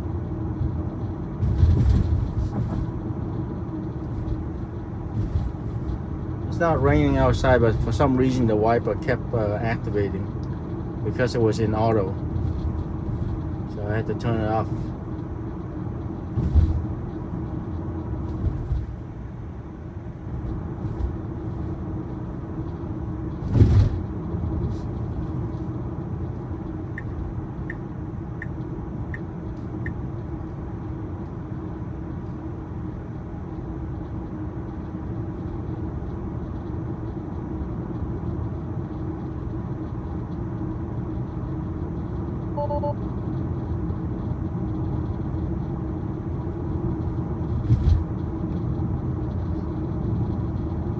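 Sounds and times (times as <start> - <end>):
car road and tyre noise: 0.0 - 50.9
thump: 16.4 - 16.8, 23.4 - 24.0
brief electronic tone: 42.5 - 43.0.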